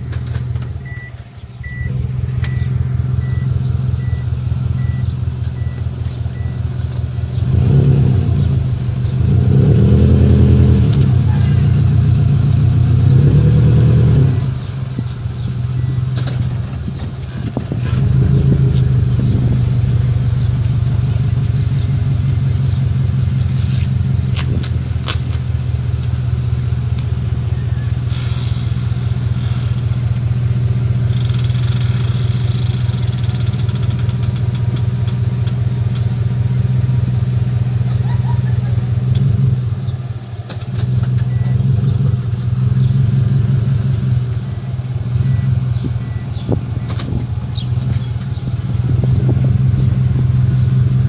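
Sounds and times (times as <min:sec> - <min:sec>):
car engine drone: 0:00.0 - 0:51.0
scattered clicks: 0:31.1 - 0:36.1.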